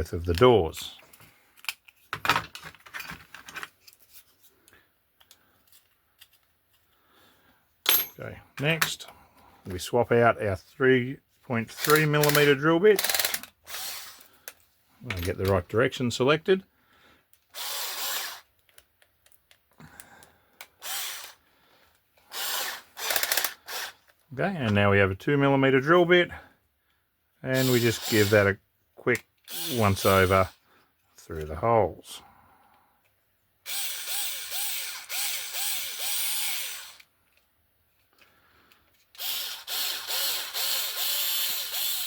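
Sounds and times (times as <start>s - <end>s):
power drill drilling: 11.8s - 14.2s, 17.5s - 18.5s, 20.8s - 21.4s, 22.3s - 24.0s, 27.6s - 28.5s, 29.5s - 30.6s, 33.7s - 37.1s, 39.2s - 42.0s.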